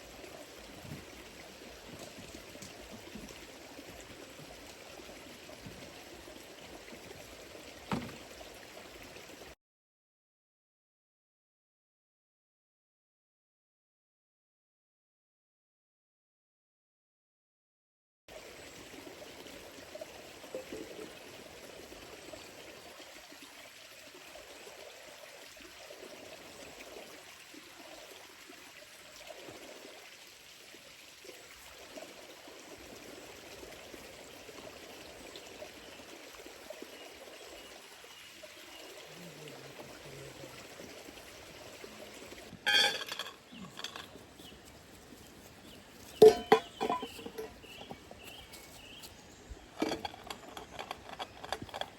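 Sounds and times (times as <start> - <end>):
water trickling: 0.0 - 9.6, 18.3 - 51.9.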